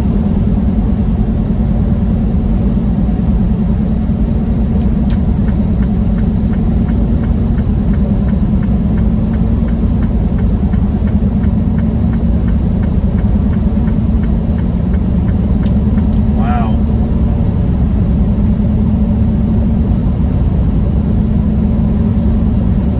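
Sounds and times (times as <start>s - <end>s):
truck engine and road rumble: 0.0s - 22.9s
light regular ticking: 4.7s - 16.9s.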